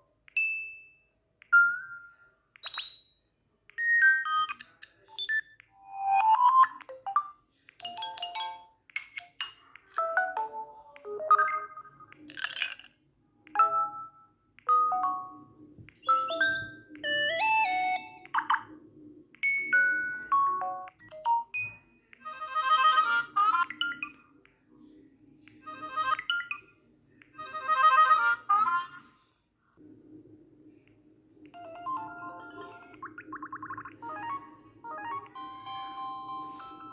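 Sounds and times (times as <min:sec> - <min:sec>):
phone notification chimes: 0:34.0 - 0:36.9.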